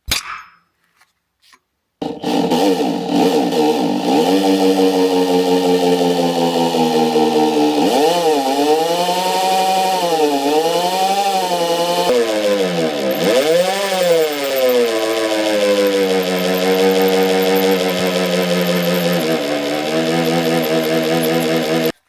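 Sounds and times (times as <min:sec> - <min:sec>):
power tool motor bogging down: 0:02.0 - 0:22.0.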